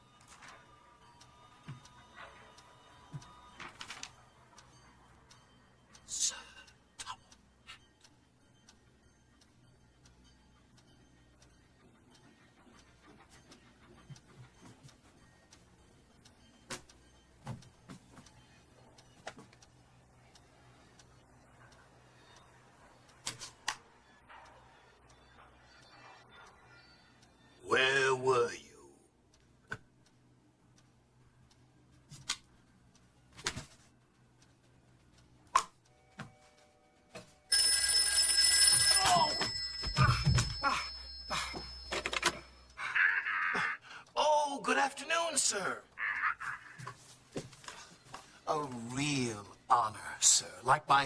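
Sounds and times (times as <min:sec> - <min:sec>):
telephone bell ringing: 0:36.0 - 0:42.8.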